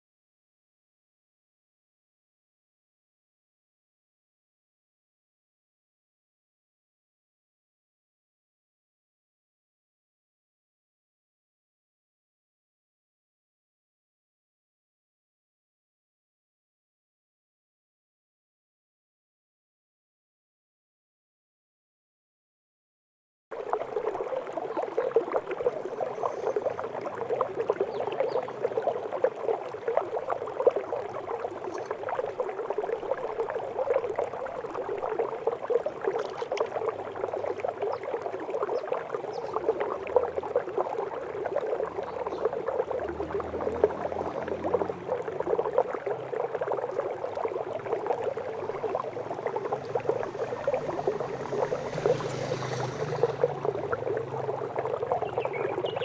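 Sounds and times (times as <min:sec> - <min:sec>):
small waterfall trickling and splashing: 0:23.5 - 0:56.0.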